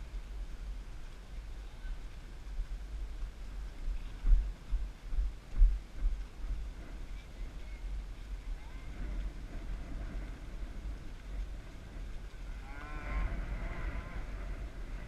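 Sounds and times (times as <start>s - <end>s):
steady low rumble: 0.0s - 15.0s
cow mooing: 12.6s - 14.4s.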